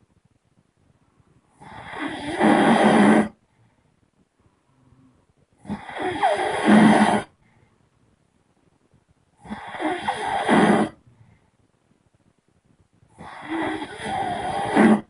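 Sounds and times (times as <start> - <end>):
person snoring loudly: 1.6 - 3.4, 5.6 - 7.3, 9.4 - 11.0, 13.2 - 15.0.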